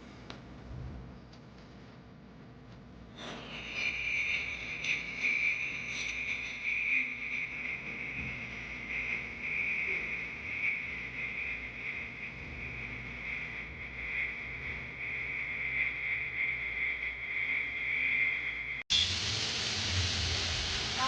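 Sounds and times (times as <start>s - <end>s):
insects calling high-pitched: 3.2s - 18.8s.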